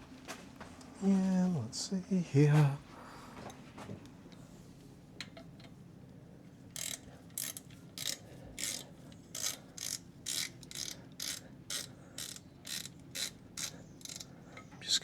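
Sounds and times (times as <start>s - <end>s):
ratchet wrench clicking: 6.8s - 14.3s.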